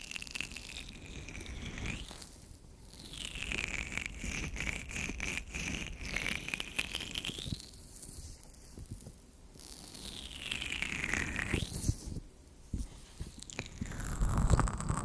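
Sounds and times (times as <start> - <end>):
oiled hands rubbing microphone: 10.0 - 15.0.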